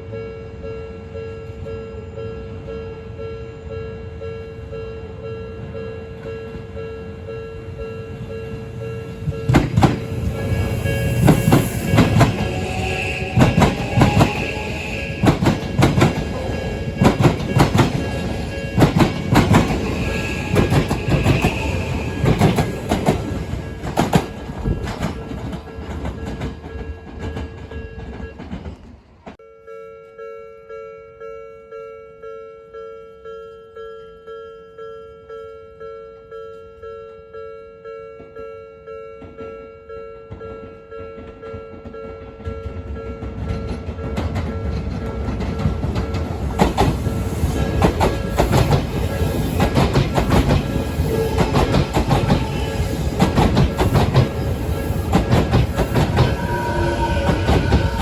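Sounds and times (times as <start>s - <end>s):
level crossing warning bell: 0.2s - 28.6s, 29.4s - 58.0s
train wheels clattering over rails: 8.9s - 29.4s, 41.2s - 58.0s.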